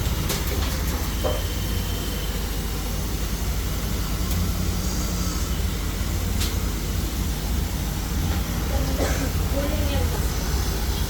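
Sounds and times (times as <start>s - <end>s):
machine low hum: 0.0s - 11.0s
air blower hiss: 1.2s - 11.0s.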